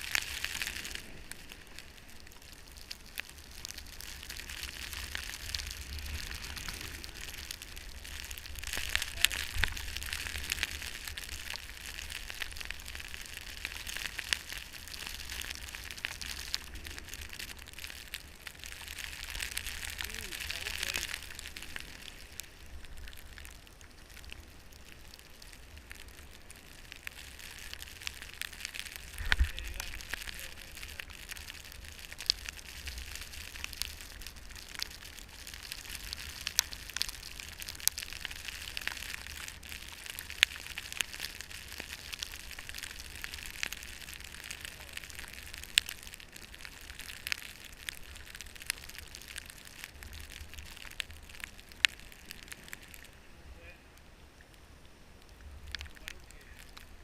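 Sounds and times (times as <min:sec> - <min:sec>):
small scattered ticks: 0:00.0 - 0:53.3, 0:54.0 - 0:57.0
steady hiss of snow: 0:00.0 - 0:57.0.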